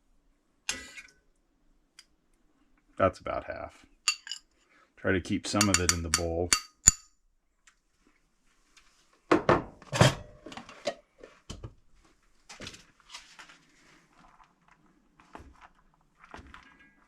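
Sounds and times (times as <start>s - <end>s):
utensil scraping against dishes: 5.6s - 7.0s.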